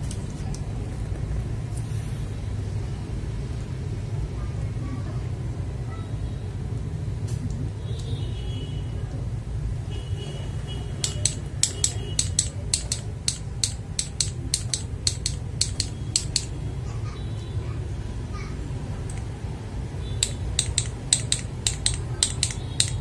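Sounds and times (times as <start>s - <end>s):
mechanical keyboard keys clacking: 11.0s - 16.6s, 20.2s - 23.0s.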